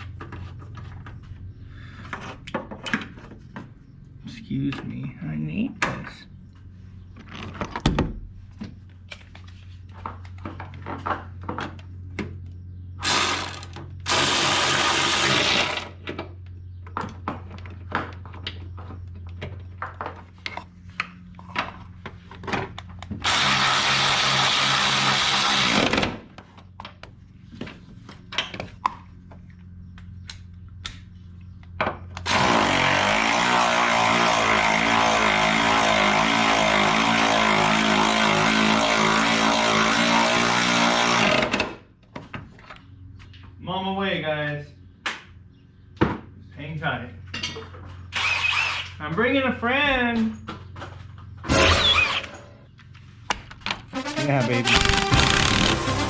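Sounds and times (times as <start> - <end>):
power tool driving bolts: 13.0 - 16.2, 23.1 - 26.2, 32.2 - 41.8, 48.1 - 49.0, 51.5 - 52.5, 54.7 - 56.0.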